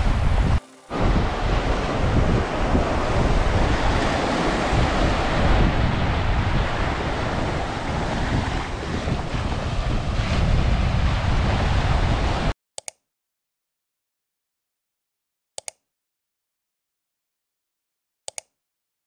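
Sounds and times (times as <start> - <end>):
ocean surf washing onto beach: 0.0 - 12.5
wind blowing on microphone: 0.0 - 12.6.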